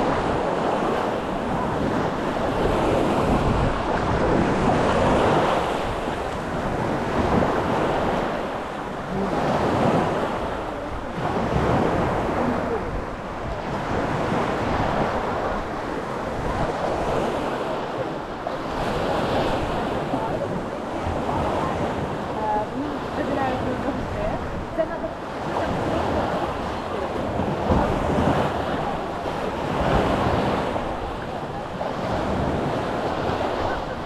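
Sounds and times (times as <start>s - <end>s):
sea waves washing onto beach: 0.0s - 34.0s
wind buffeting microphone: 0.0s - 34.0s.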